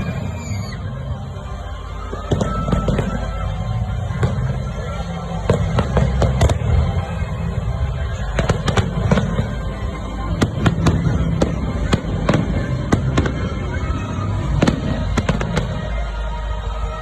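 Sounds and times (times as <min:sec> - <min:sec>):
music playing: 0:00.0 - 0:17.0
fireworks bangs and pops: 0:02.0 - 0:07.5, 0:08.1 - 0:16.1.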